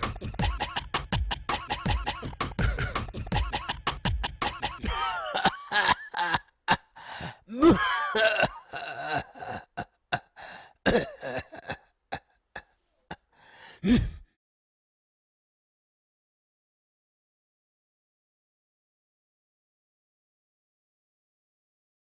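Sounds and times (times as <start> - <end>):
person coughing: 1.8 - 3.5, 4.7 - 13.2, 13.8 - 14.3
throat clearing: 2.0 - 3.4, 10.9 - 13.2
person groaning: 4.8 - 11.8, 13.8 - 14.3.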